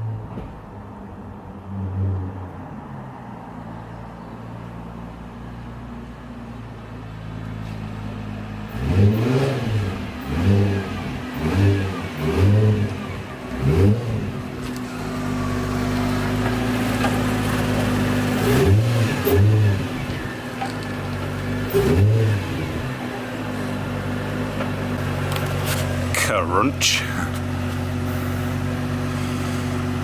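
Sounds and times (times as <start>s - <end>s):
engine throttle revs: 8.6s - 30.0s
car engine idling: 9.8s - 30.0s.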